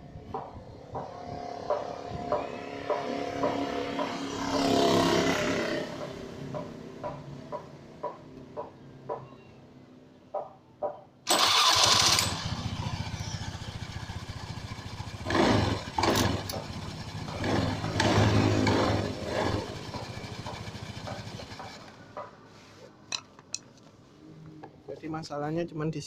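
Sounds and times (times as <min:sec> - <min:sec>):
scooter engine idling and revving: 0:00.3 - 0:08.7, 0:11.3 - 0:22.4.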